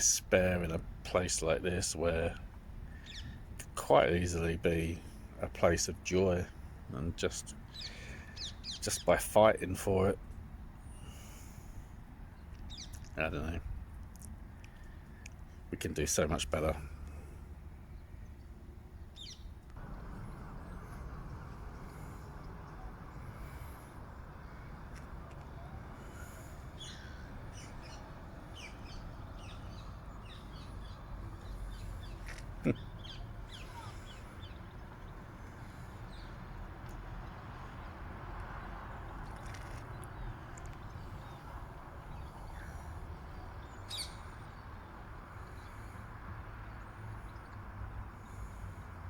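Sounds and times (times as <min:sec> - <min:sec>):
small birds chirping: 0:02.4 - 0:03.5, 0:07.4 - 0:09.2, 0:12.3 - 0:49.0
steady low rumble: 0:19.6 - 0:36.2.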